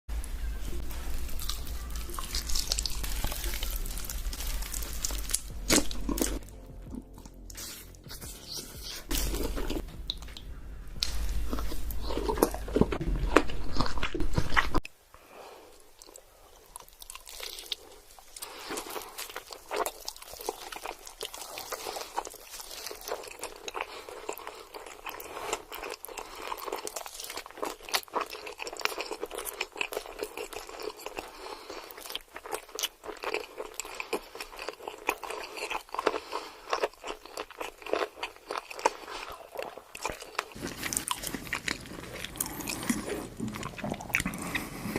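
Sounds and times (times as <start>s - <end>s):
deep low rumble: 0.1s - 8.2s, 9.1s - 14.4s
person chewing crunchy food: 1.1s - 14.9s, 15.7s - 44.9s.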